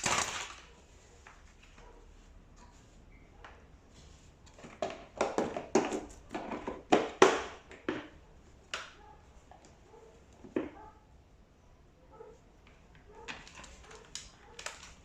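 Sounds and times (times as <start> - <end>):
machine parts knocking and clattering: 0.0 - 0.7.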